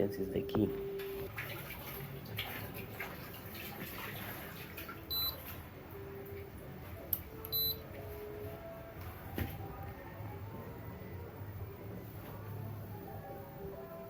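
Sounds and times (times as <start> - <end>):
short high electronic beeps: 7.5 - 7.8.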